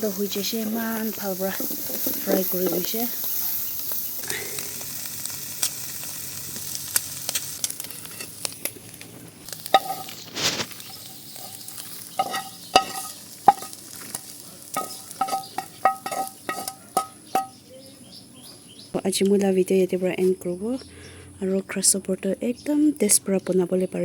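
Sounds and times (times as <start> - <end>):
grasshoppers sizzling in metal pan: 0.0 - 17.7
spatula scraping and rattling: 9.5 - 17.5
spatula clinking on pan: 9.7 - 10.2, 12.2 - 17.6.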